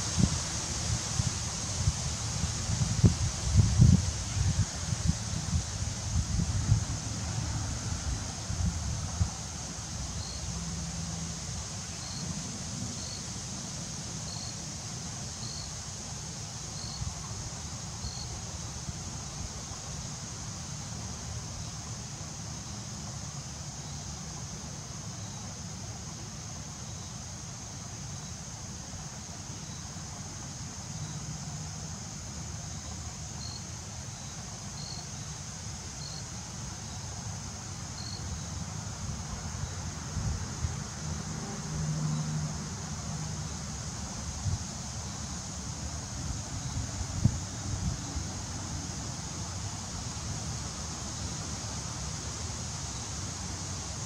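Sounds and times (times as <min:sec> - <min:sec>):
low wind rumble: 0:00.0 - 0:13.6
high insect drone: 0:00.0 - 0:54.0.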